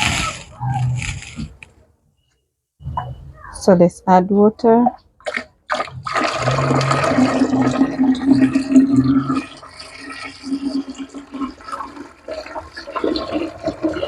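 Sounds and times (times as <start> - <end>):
water pouring into a drinker: 5.2 - 14.0.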